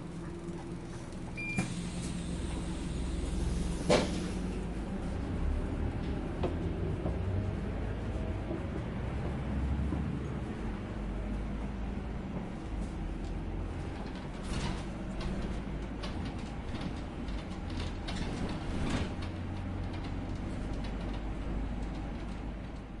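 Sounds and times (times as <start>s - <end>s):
bus engine rumble: 0.0s - 23.0s
air brake hissing bursts: 1.4s - 4.5s.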